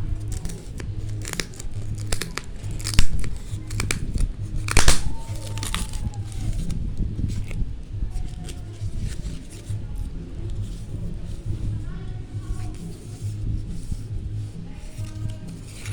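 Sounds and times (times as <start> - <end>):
packaging ripping: 0.0 - 9.6, 14.9 - 15.9
plastic packaging crinkling: 0.0 - 12.9, 14.8 - 15.9.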